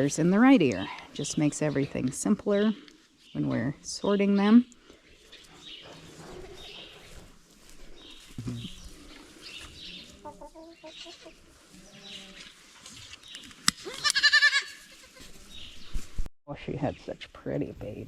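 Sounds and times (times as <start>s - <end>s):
rustling: 4.8s - 16.3s
goat kid bleating: 13.8s - 15.4s
goat kids calling: 13.8s - 15.5s.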